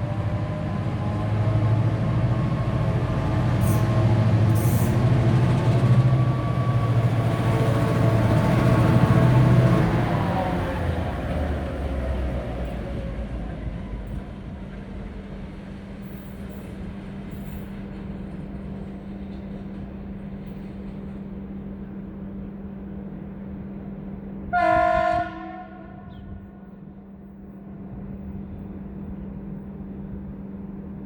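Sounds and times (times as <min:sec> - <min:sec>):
diesel locomotive idling: 0:02.4 - 0:27.6
locomotive horn blast: 0:24.5 - 0:26.6.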